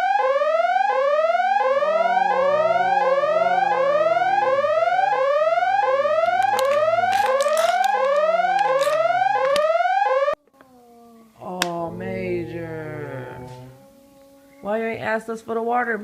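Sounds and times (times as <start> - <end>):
looping upward sweeping tone: 0.0 - 10.3, 11.8 - 14.9.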